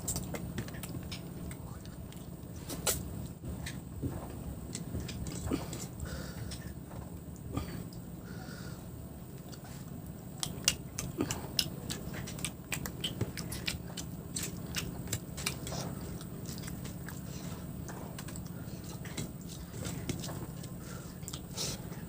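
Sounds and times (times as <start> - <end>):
person chewing crispy food: 9.4 - 22.0.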